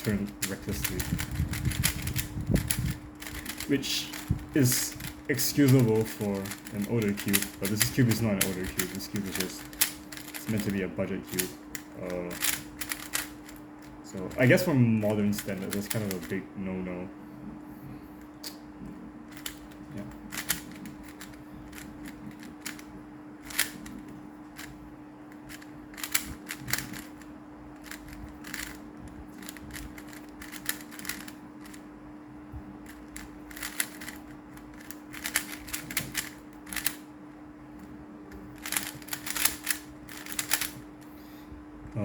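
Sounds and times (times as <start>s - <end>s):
steady low hum: 0.0s - 42.0s
plastic puzzle cube clicking: 0.4s - 4.2s, 4.9s - 10.7s, 11.4s - 13.6s, 20.3s - 22.8s, 23.5s - 24.0s, 25.5s - 27.1s, 27.8s - 28.8s, 29.4s - 31.8s, 32.9s - 37.0s, 38.6s - 40.8s.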